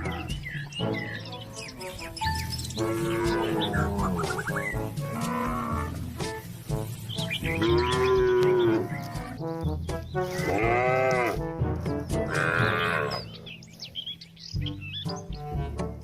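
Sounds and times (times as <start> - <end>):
background music: 0.0 - 16.0
cows mooing: 2.8 - 6.1, 7.4 - 9.4, 10.3 - 11.5, 12.2 - 13.3.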